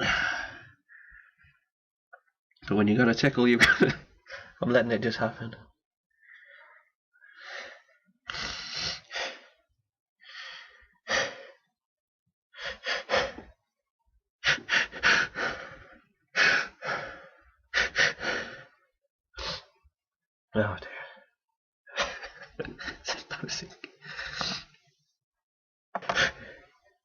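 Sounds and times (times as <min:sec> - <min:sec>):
man gasping in-breaths: 0:00.0 - 0:01.3.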